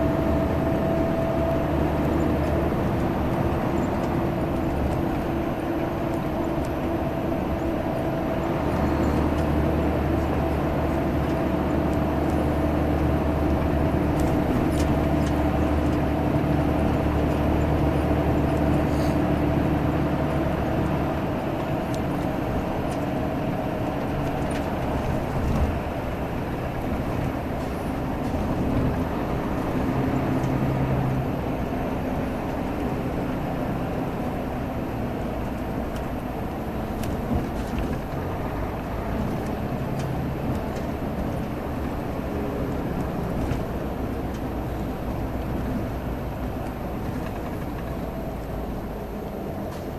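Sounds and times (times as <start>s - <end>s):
bus diesel engine droning: 0.0s - 49.9s
road noise: 0.0s - 49.9s.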